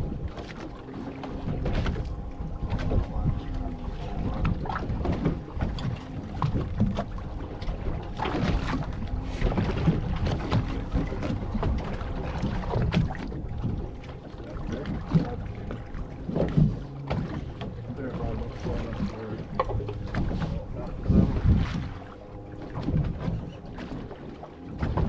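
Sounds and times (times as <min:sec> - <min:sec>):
water against boat hull: 0:00.0 - 0:25.0
wind buffeting microphone: 0:00.0 - 0:25.0
knocks and clicks from gear: 0:19.4 - 0:20.4.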